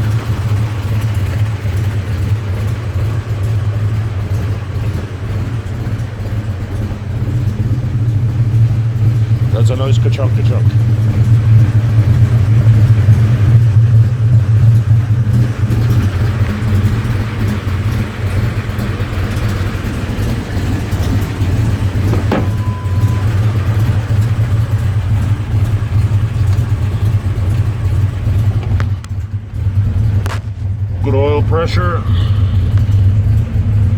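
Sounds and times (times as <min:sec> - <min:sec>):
car engine idling with lopey beat: 0:00.0 - 0:33.9
short beep: 0:22.2 - 0:23.6.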